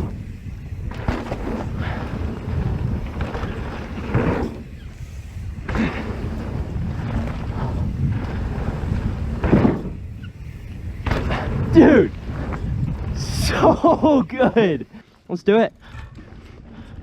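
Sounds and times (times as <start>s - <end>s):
wind buffeting microphone: 0.0s - 15.0s
bike tyres on dirt: 0.0s - 17.0s.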